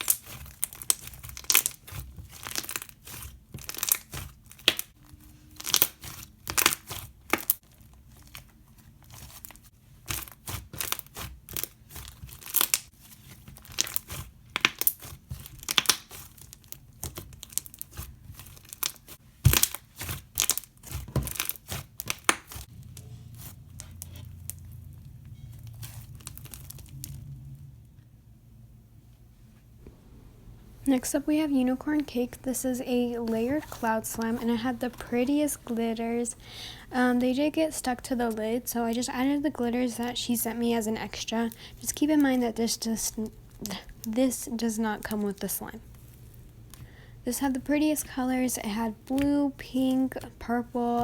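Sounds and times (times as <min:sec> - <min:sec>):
slime crackling and popping: 0:00.0 - 0:27.3.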